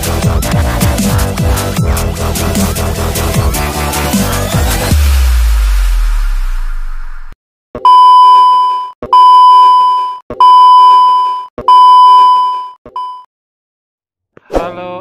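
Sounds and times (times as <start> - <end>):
electronic beep tone: 7.8 - 13.3.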